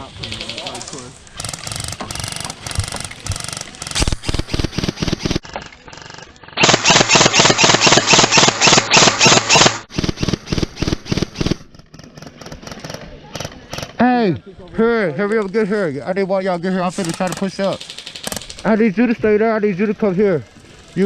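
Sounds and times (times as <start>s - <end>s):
airsoft gun firing: 1.4s - 14.0s.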